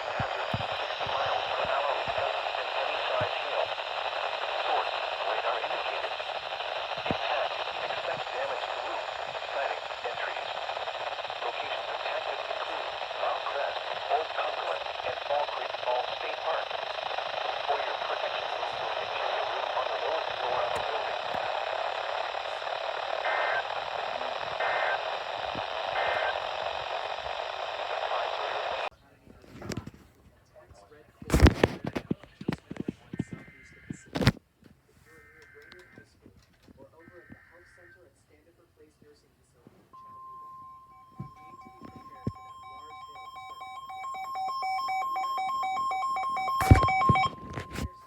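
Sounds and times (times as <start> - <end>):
two-tone data bursts: 0.0 - 28.9, 40.0 - 48.0
radio static: 0.0 - 34.4, 35.0 - 48.0
pulsing electronic beeps: 40.0 - 48.0
steady warning tone: 40.0 - 48.0.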